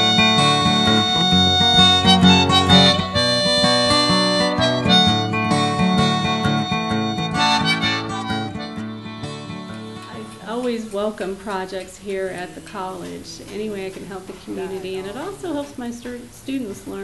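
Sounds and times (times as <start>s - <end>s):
harmonica melody: 0.0s - 13.4s
acoustic guitar: 0.0s - 17.0s.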